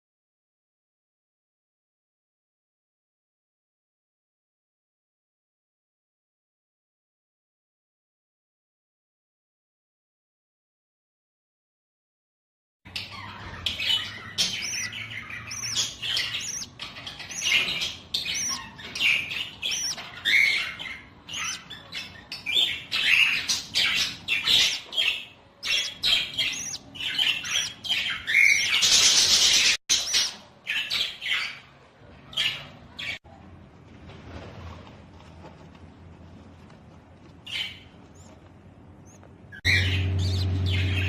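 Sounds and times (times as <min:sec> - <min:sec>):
budgerigars chattering: 0:13.0 - 0:31.6, 0:39.0 - 0:41.0.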